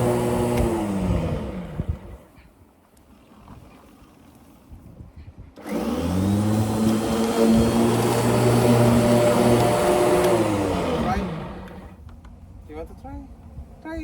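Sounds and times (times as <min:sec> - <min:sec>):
lawn mower motor humming: 0:00.0 - 0:02.3, 0:05.6 - 0:12.0.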